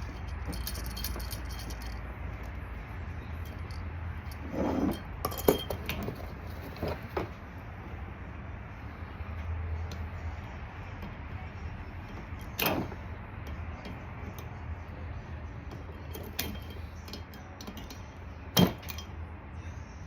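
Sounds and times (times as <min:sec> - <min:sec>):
metal engine parts clicking: 0:00.0 - 0:02.6, 0:03.3 - 0:07.2, 0:15.7 - 0:19.2
steady low hum: 0:00.0 - 0:20.0.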